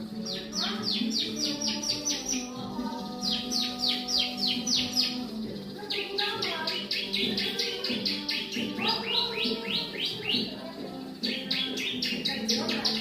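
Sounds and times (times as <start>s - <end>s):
bird song rapid high notes: 0.0s - 13.0s.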